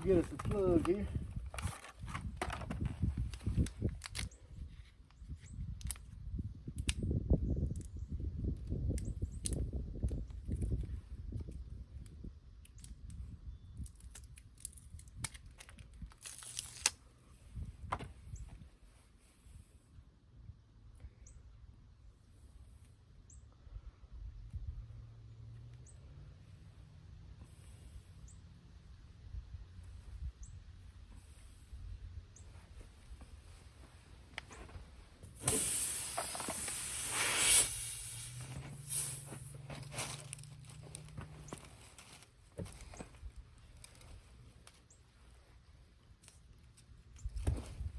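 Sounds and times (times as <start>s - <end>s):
rustling crinkling scrape: 0.0s - 4.2s, 32.4s - 44.9s
compressed air hissing: 35.2s - 40.4s.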